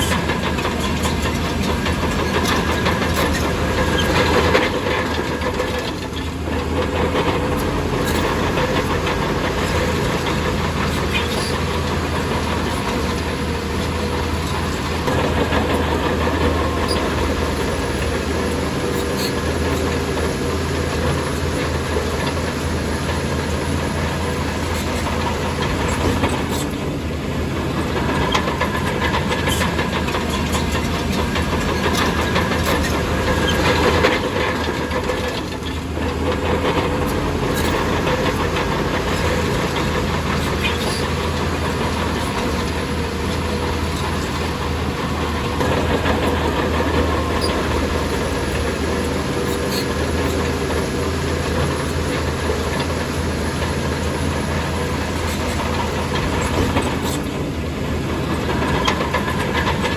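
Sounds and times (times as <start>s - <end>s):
diesel engine running: 0.0s - 59.9s
steel tracks rattling: 0.0s - 59.9s.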